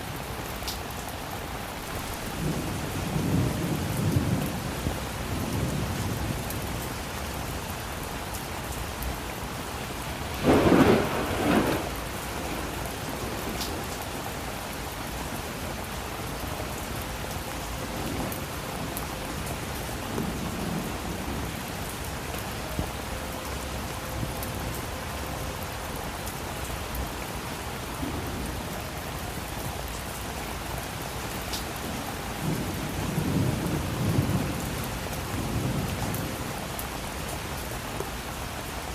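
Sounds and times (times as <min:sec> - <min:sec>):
steady rain: 0:00.0 - 0:38.9
thunder clap and rumbles: 0:01.8 - 0:06.8, 0:10.4 - 0:11.9.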